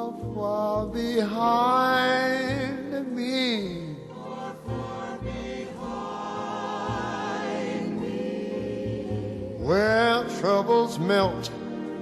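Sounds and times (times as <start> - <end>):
person singing: 0.0 - 7.2, 9.6 - 12.0
slow ballad accompaniment: 0.0 - 12.0.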